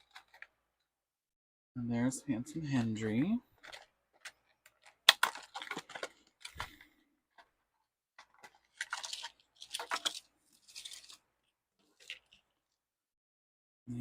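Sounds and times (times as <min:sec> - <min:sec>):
packaging rustling: 0:00.0 - 0:00.6, 0:03.6 - 0:07.6, 0:08.2 - 0:12.6
sharp clicks of packaging: 0:03.6 - 0:07.5, 0:08.2 - 0:11.2.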